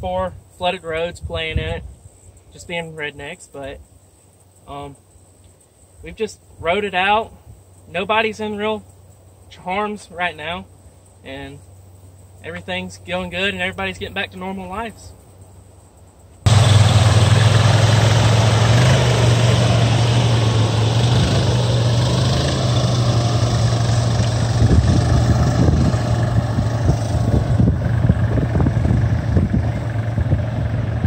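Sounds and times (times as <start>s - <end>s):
rushing noise: 16.5s - 31.0s
vehicle engine running: 16.5s - 31.0s.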